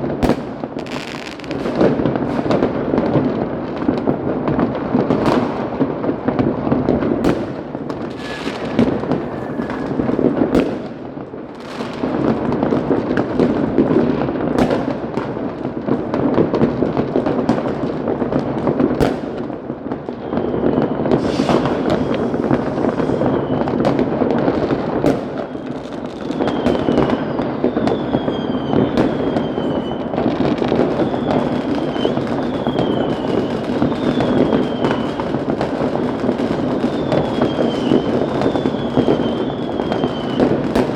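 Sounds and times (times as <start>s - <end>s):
firecrackers crackling: 0.0s - 40.9s
firework bangs: 0.0s - 40.9s
falling firework whistles: 3.8s - 12.2s, 20.0s - 40.9s.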